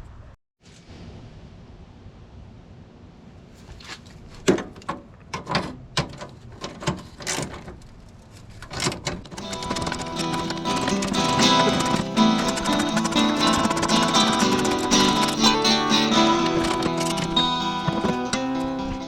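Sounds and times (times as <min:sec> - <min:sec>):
sharp knocks and clicks: 0:08.7 - 0:19.0
strummed flamenco guitar music: 0:09.4 - 0:19.0.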